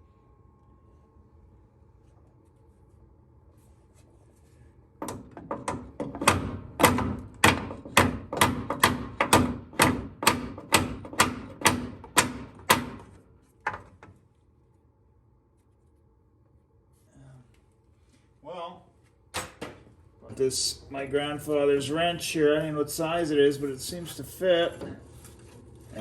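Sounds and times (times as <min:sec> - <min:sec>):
hammer pounding on metal pin: 0:05.0 - 0:13.2.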